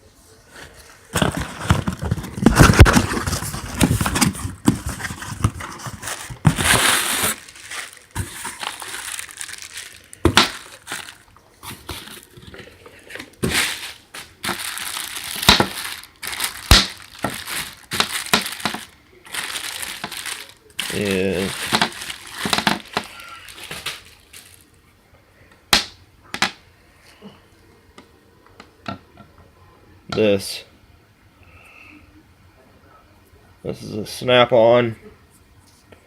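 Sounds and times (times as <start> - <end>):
packaging crinkling: 1.2 - 24.7.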